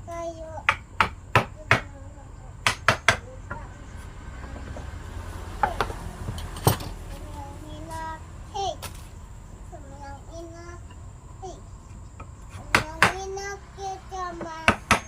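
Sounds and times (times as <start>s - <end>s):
hammer striking wood: 0.6s - 1.9s, 2.6s - 3.7s, 12.2s - 13.3s, 14.3s - 15.0s.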